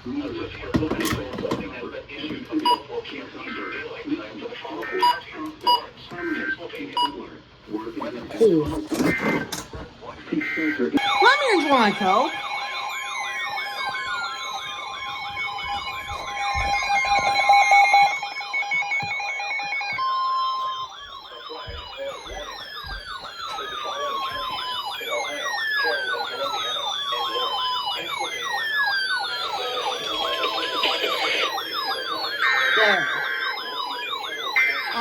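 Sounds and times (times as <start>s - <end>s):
electronic sirens yelping: 4.6s - 7.1s, 7.8s - 9.7s, 10.3s - 35.0s
steady held siren tones: 10.3s - 35.0s
wailing siren tones: 10.3s - 35.0s.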